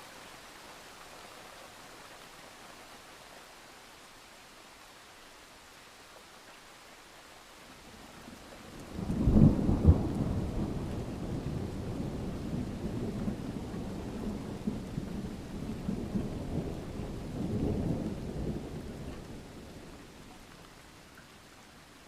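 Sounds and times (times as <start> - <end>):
rain patter: 0.0 - 22.0
thunder rumbling: 8.9 - 19.4.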